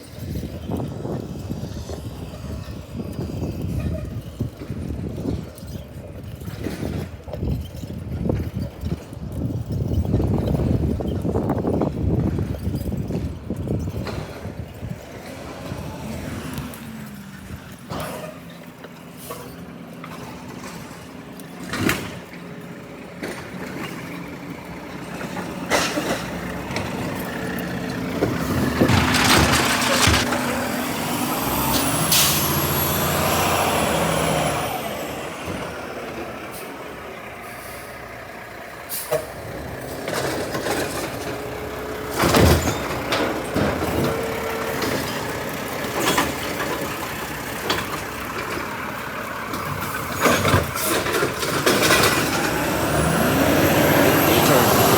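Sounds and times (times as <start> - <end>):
heavy truck running: 0.0 - 54.9
air brake hiss: 38.9 - 39.3.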